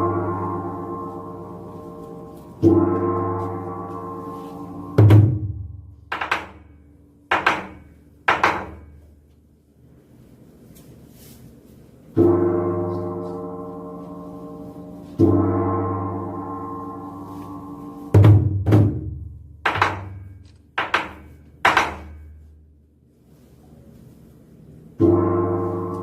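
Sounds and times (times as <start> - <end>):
heavy drum strokes ringing: 0.0 - 9.1, 12.1 - 20.4, 25.0 - 26.0.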